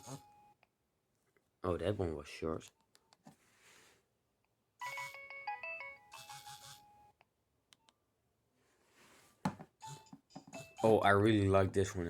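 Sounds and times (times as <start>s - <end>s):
phone alert tone: 4.8s - 7.1s.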